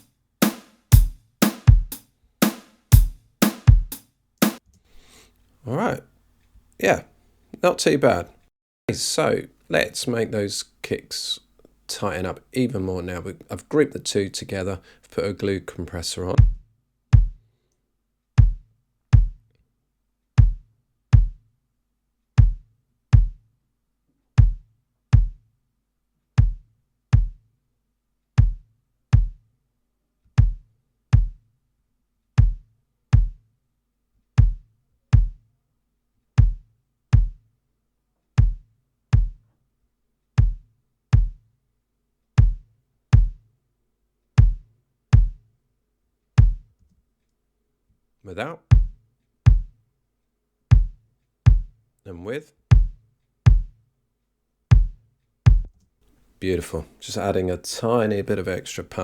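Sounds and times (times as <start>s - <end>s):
kick drum thuds: 0.0s - 4.6s, 16.4s - 16.6s, 17.2s - 17.4s, 18.4s - 19.4s, 20.4s - 20.6s, 21.2s - 21.4s, 22.4s - 22.6s, 23.2s - 23.4s, 24.4s - 24.6s, 25.2s - 25.4s, 26.4s - 26.6s, 27.2s - 27.4s, 28.4s - 28.6s, 29.2s - 29.4s, 30.4s - 30.6s, 31.2s - 31.4s, 32.4s - 32.6s, 33.2s - 33.4s, 34.4s - 34.6s, 35.2s - 35.4s, 36.4s - 36.6s, 37.2s - 37.4s, 38.4s - 38.6s, 39.2s - 39.4s, 40.4s - 40.6s, 41.2s - 41.4s, 42.4s - 42.6s, 43.2s - 43.4s, 44.4s - 44.6s, 45.2s - 45.4s, 46.4s - 46.7s, 48.7s - 49.7s, 50.7s - 51.7s, 52.7s - 53.8s, 54.7s - 55.8s.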